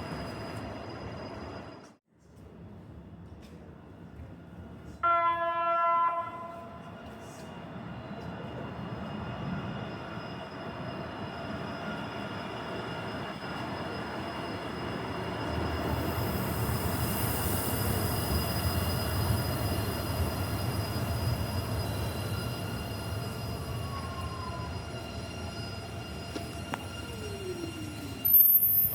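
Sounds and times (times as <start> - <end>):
train rumbling on rails: 0.0 - 28.9
high-pitched tones: 18.3 - 28.9.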